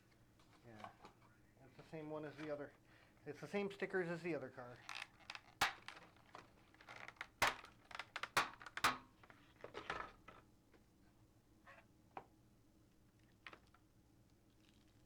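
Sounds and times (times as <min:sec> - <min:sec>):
packaging crinkling and clicking: 0:04.8 - 0:09.8.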